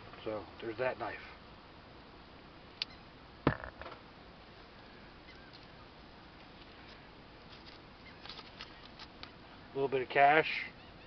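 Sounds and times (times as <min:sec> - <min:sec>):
sharp knock: 0:03.5 - 0:04.0.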